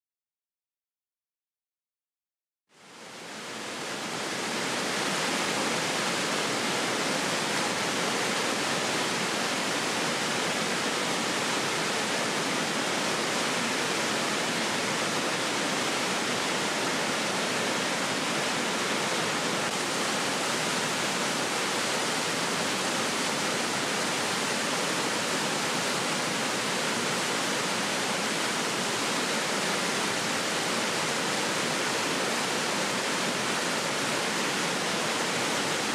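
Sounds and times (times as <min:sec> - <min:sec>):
waterfall rushing: 0:02.8 - 0:35.9.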